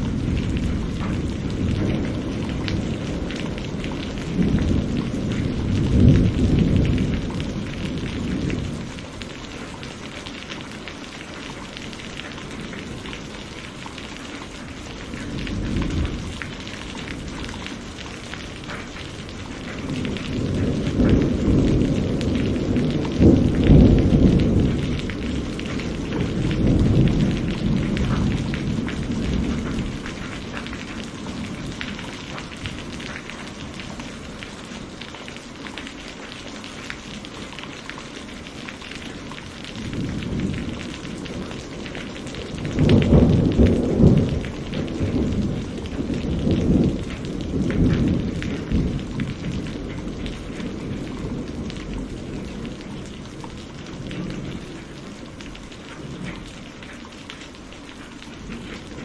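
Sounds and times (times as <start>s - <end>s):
rolling thunder: 0.0s - 9.8s, 14.9s - 35.0s, 39.3s - 56.4s
heavy rain falling: 0.0s - 59.0s.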